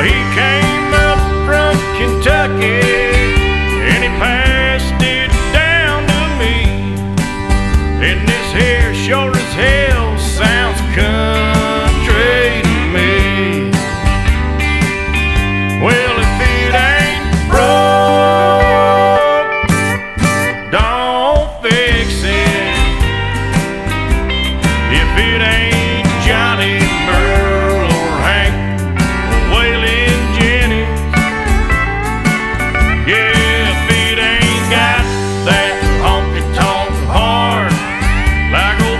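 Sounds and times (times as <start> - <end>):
country song with vocals: 0.0 - 38.9.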